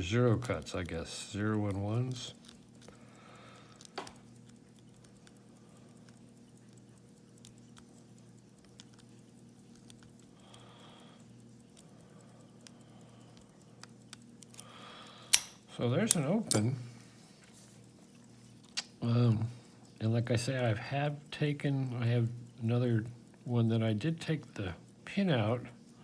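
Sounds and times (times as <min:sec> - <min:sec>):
steady low hum: 0:00.0 - 0:26.0
lock pick clicks: 0:13.8 - 0:16.8.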